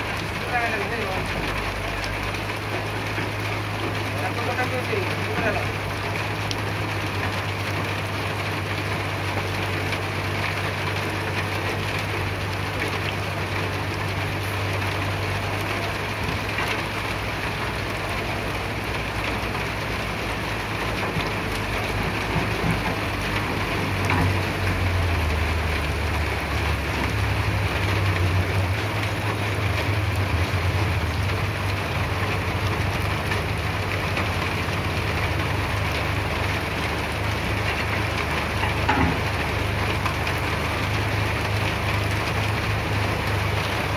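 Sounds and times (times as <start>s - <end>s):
excavator diesel engine running: 0.0s - 43.9s.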